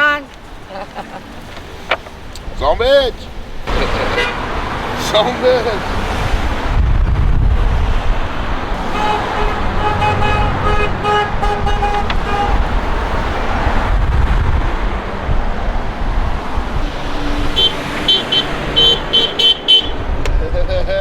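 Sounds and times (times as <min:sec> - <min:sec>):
passing road traffic: 0:00.0 - 0:21.0
car horn beeps: 0:03.7 - 0:04.5, 0:08.8 - 0:13.3, 0:17.4 - 0:20.1
higher-pitched horn tooting: 0:08.8 - 0:13.2, 0:17.2 - 0:20.0.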